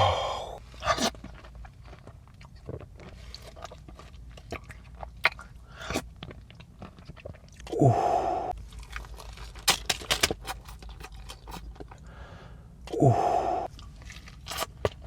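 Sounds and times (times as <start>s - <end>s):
chewing with mouth clicks: 0.6s - 7.8s, 10.4s - 12.1s, 13.7s - 15.0s.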